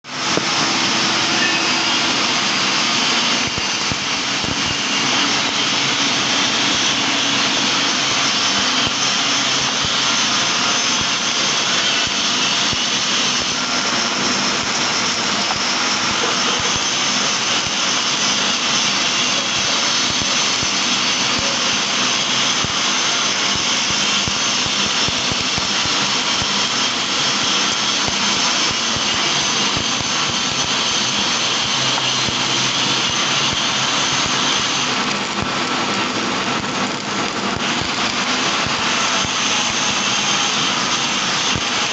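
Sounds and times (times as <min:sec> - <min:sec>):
welding arc crackling hiss: 0:00.0 - 0:41.9.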